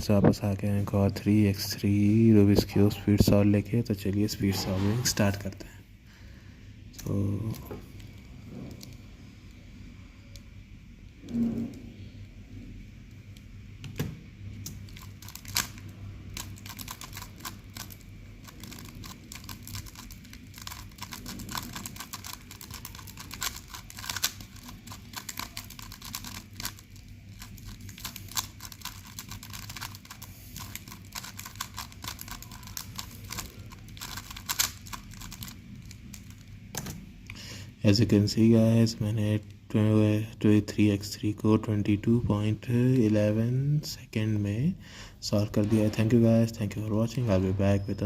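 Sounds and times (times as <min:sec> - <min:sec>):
puzzle cube plastic clicks: 0:14.6 - 0:36.9.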